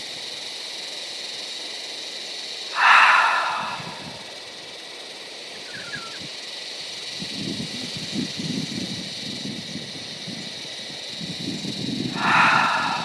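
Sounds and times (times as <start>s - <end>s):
person exhaling through the mouth: 2.8s - 4.4s, 12.1s - 13.0s.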